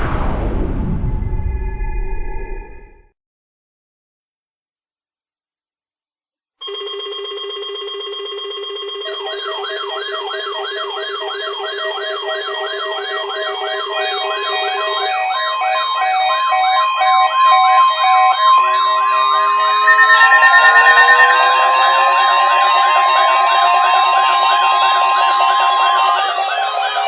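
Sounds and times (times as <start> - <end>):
warbling electronic siren: 1.0 - 3.0, 8.9 - 27.0
electronic tone chord: 13.7 - 27.0.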